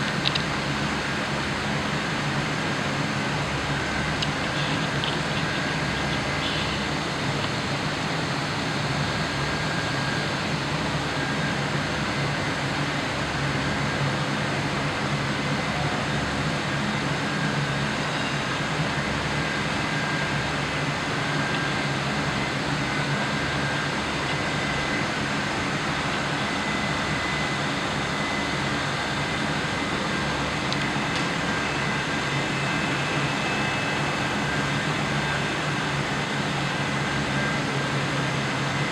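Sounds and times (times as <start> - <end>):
heat pump humming: 0.0 - 38.9.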